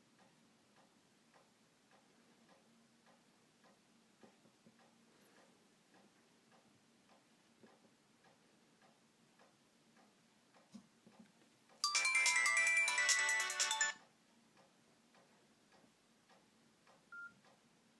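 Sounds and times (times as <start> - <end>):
faint steady ticking: 0.0 - 17.9
phone electronic tone melody: 11.8 - 14.0.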